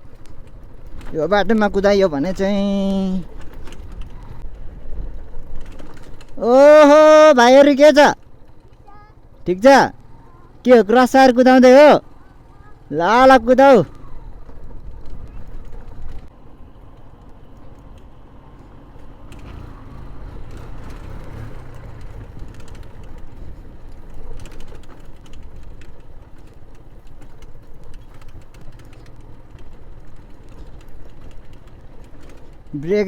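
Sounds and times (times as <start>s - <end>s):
clicks and rattles: 0.0s - 6.5s, 17.2s - 33.0s
motorcycle engine rumbling: 0.0s - 33.0s.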